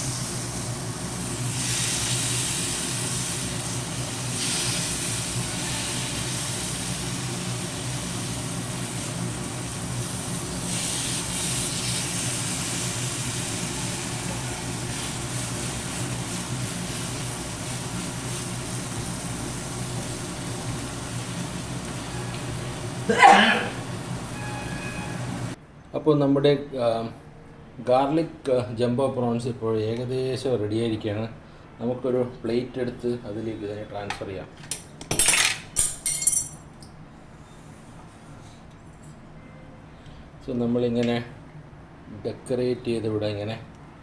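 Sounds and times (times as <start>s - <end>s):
prawns sizzling in frying pan: 0.0s - 25.6s.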